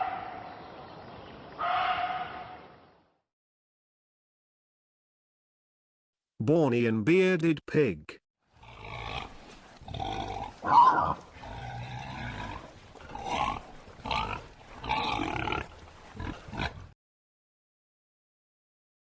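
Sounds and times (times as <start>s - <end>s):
pig grunting: 8.6s - 17.0s.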